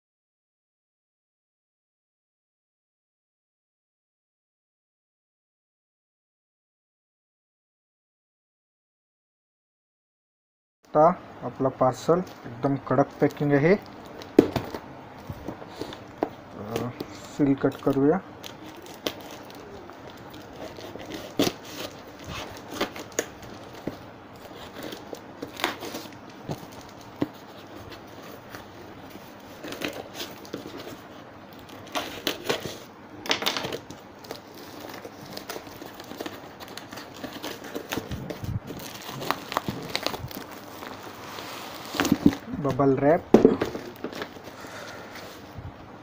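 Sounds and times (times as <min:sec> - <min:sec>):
plastic wrapping crinkling and tearing: 0:12.0 - 0:44.7.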